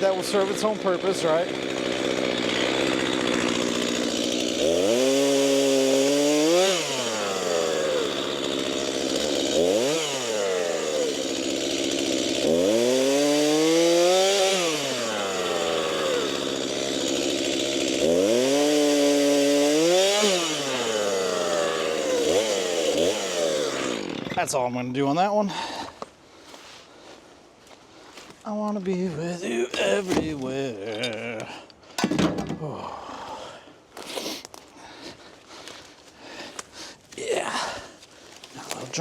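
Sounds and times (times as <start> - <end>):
chainsaw revving and idling: 0.0 - 26.0, 29.0 - 31.7, 37.1 - 39.0.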